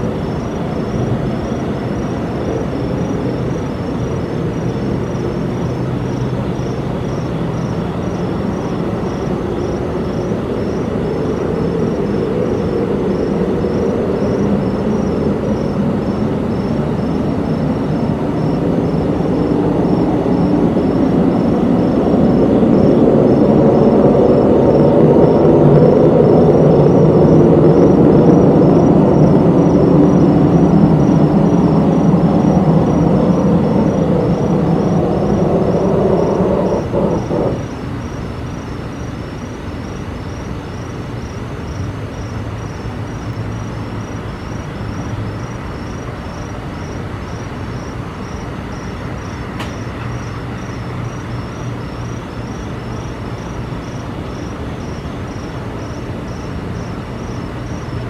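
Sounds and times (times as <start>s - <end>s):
low droning hum: 8.2s - 38.6s.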